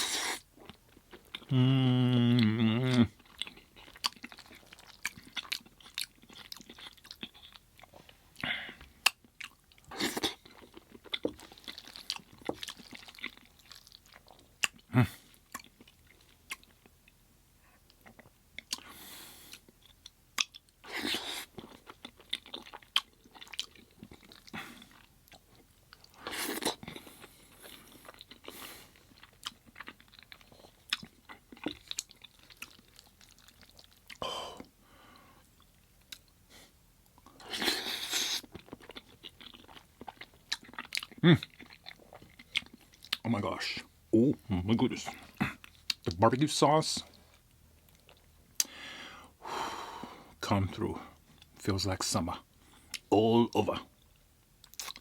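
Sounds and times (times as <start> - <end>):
chewing with mouth clicks: 0.1 - 34.8, 37.0 - 43.3, 47.0 - 48.8, 54.0 - 55.0.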